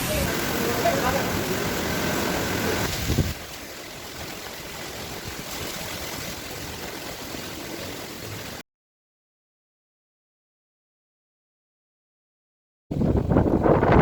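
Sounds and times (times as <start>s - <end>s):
strong wind: 0.0s - 3.5s, 12.9s - 14.0s
sea surf: 0.0s - 8.6s.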